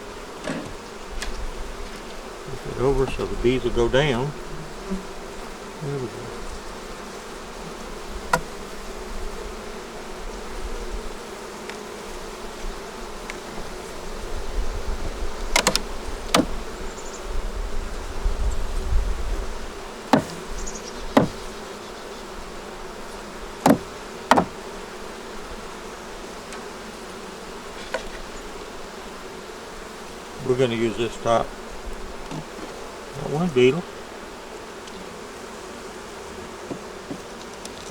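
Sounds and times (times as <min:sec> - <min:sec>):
honey bees buzzing: 0:00.0 - 0:37.9
sharp knocks: 0:08.3 - 0:08.6, 0:15.6 - 0:16.6, 0:20.1 - 0:20.5, 0:21.2 - 0:21.4, 0:23.7 - 0:24.6.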